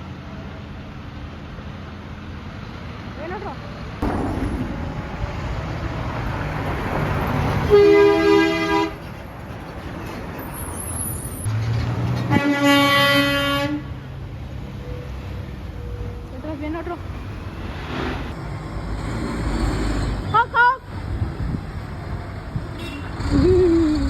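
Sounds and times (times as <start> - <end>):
passing truck engine noise: 0.1 - 24.0
truck air horn blasts: 7.6 - 9.0, 12.3 - 14.0, 22.8 - 23.2.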